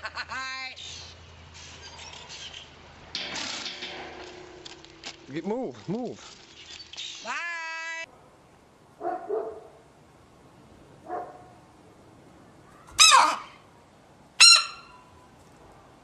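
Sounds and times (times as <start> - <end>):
animal sharp cries: 12.8 - 13.6, 14.4 - 15.0.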